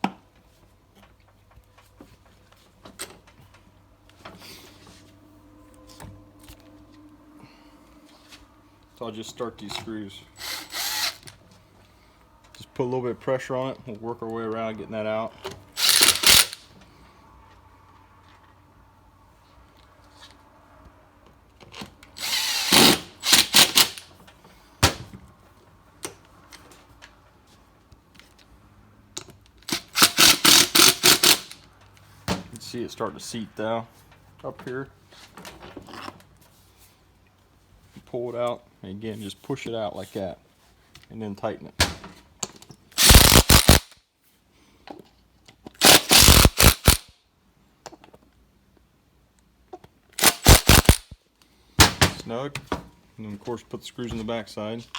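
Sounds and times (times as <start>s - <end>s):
ratchet wrench clicking: 10.4s - 11.3s, 15.8s - 16.6s, 22.2s - 24.0s, 29.7s - 31.6s, 43.0s - 44.0s, 45.8s - 47.1s, 50.2s - 51.2s
power drill driving screws: 10.4s - 11.4s, 15.8s - 16.6s, 22.2s - 24.1s, 29.7s - 31.6s, 43.0s - 44.0s, 45.8s - 47.1s, 50.2s - 51.2s.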